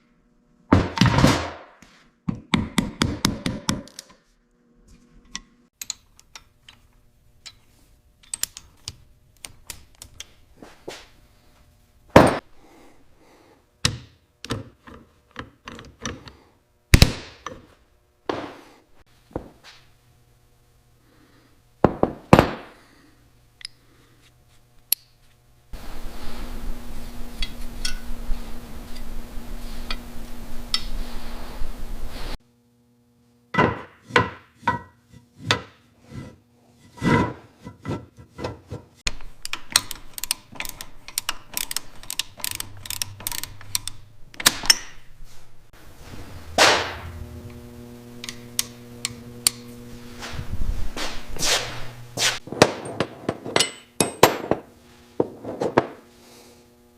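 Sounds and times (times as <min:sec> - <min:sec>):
tool knocks and taps: 0:21.8 - 0:22.6, 0:52.6 - 0:56.0
machine hum: 0:25.5 - 0:33.6, 0:39.0 - 0:56.9.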